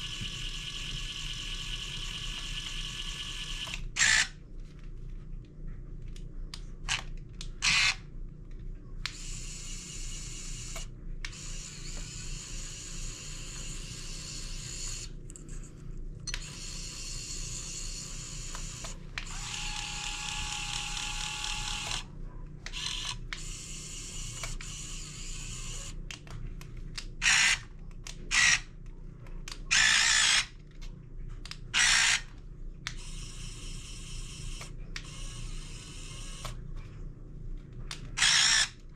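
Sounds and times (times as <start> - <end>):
small electric motors whirring: 0.0 - 4.3, 9.1 - 15.1, 16.4 - 22.1, 22.7 - 26.0, 27.2 - 27.6, 29.7 - 30.5, 31.8 - 32.3, 32.9 - 36.6, 38.2 - 38.8.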